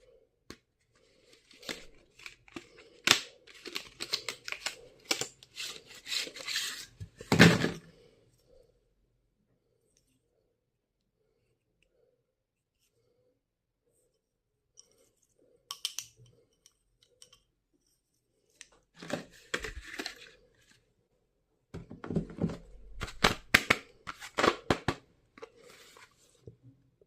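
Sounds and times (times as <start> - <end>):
packaging rustling and tearing: 1.4 - 6.9.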